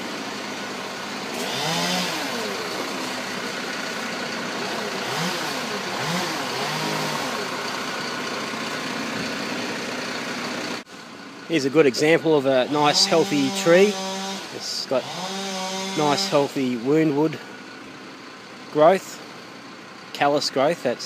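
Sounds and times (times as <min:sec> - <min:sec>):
chainsaw revving while cutting: 0:01.2 - 0:03.3, 0:04.6 - 0:07.6, 0:12.7 - 0:16.6.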